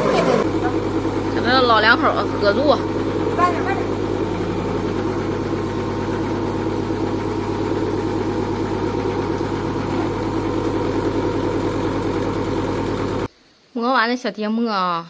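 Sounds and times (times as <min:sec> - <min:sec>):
electric grain mill humming: 0:00.0 - 0:13.3.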